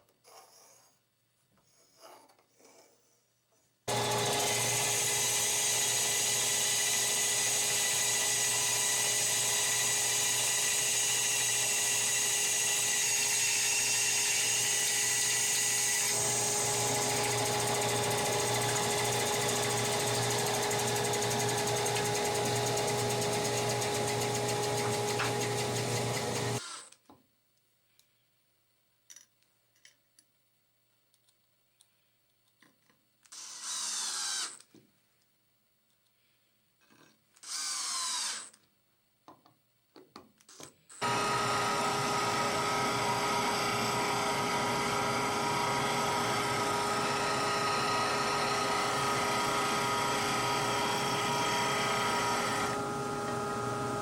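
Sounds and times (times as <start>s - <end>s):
woodworking power tool cutting: 3.9s - 26.8s, 37.4s - 38.5s, 41.0s - 54.0s.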